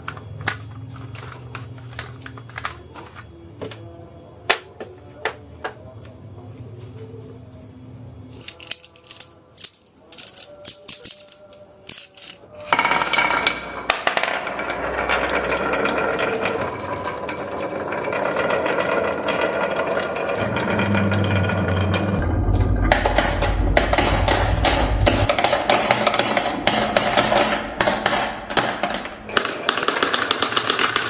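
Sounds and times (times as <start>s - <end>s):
marbles rattling down a marble run: 8.5s - 22.2s, 22.9s - 31.0s.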